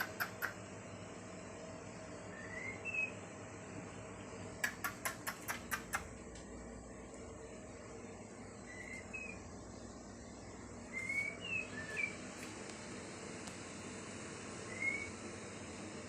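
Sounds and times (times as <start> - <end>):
small bird chirping: 0.0 - 0.6, 2.3 - 3.2, 4.6 - 6.2, 8.5 - 12.2.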